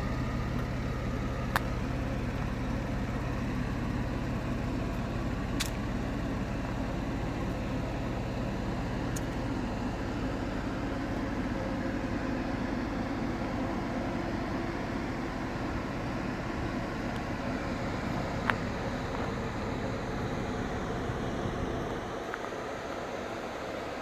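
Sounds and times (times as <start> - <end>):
faint ticks: 9.1 - 9.4.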